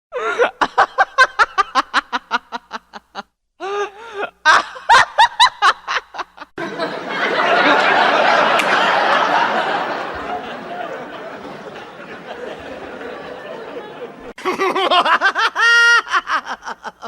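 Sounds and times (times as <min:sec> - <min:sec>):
group of people laughing: 0:00.2 - 0:03.3, 0:04.0 - 0:17.0
person laughing: 0:00.2 - 0:06.5, 0:14.4 - 0:17.0.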